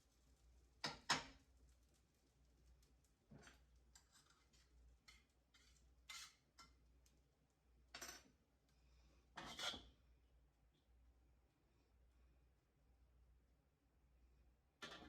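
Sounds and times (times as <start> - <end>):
faint rubbing and scraping: 9.0 - 9.9.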